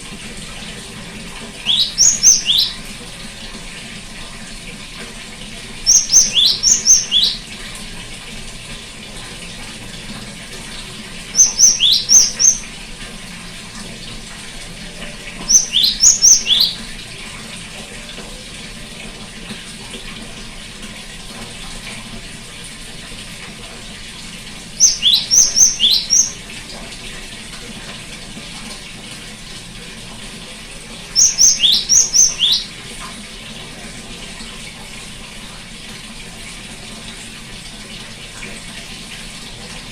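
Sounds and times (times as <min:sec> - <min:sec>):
bird calling high notes: 0:01.6 - 0:02.8, 0:05.9 - 0:07.5, 0:11.4 - 0:12.7, 0:15.4 - 0:16.9, 0:24.8 - 0:26.4, 0:31.2 - 0:32.8.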